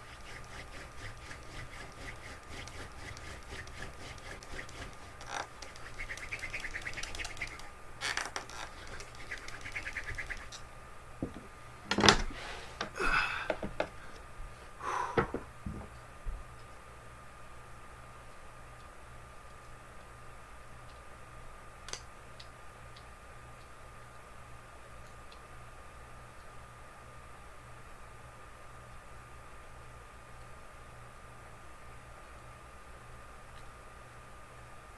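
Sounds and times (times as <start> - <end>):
wood rubbing and squeaking: 0.0 - 10.6, 11.2 - 14.2
knocks and rustles: 11.2 - 14.1, 15.1 - 16.4.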